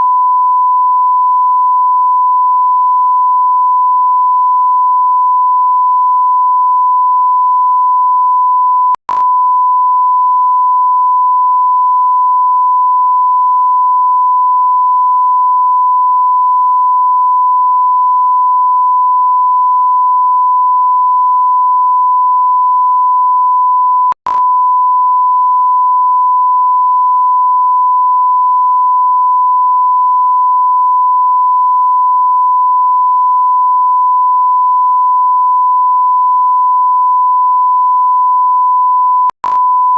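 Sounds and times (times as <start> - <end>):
steady electronic beep tone: 5.1 - 39.9
click: 24.1 - 24.5, 39.3 - 39.7.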